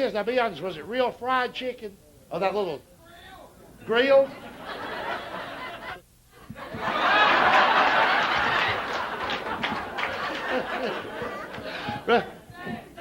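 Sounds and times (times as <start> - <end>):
audience laughing: 4.3 - 6.0, 6.6 - 12.3.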